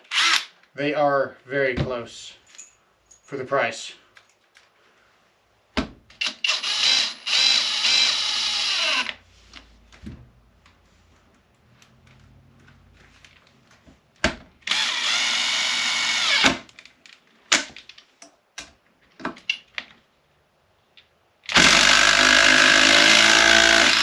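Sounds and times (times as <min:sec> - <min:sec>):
cordless drill motor whine: 0:06.5 - 0:09.2, 0:14.7 - 0:16.4, 0:21.5 - 0:24.0.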